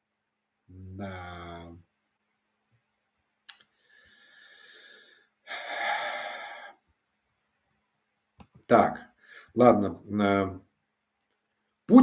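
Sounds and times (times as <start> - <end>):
mouth click: 3.5 - 3.7
man breathing: 3.7 - 6.8, 9.2 - 9.6.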